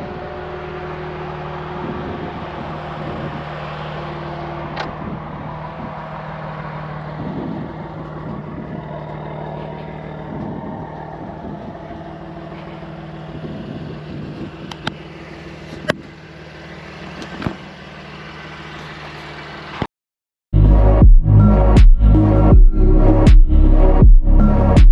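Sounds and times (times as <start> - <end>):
car engine idling: 0.0 - 19.9
loud electronic music: 20.6 - 24.9.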